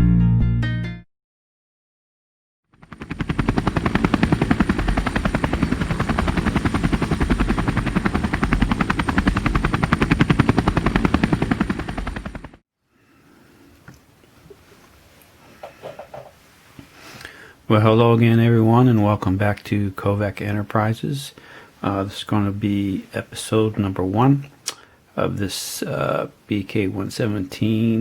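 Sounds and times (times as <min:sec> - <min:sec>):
helicopter rotor blades chopping: 0:02.7 - 0:12.6.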